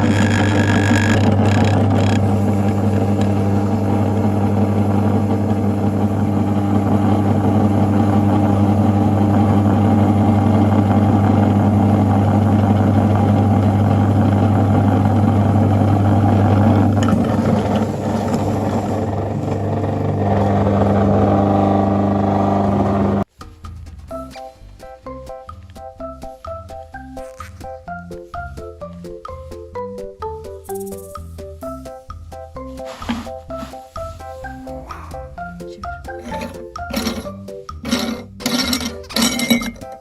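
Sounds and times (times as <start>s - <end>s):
electric meat grinder running: 0.0s - 23.2s, 36.2s - 39.6s.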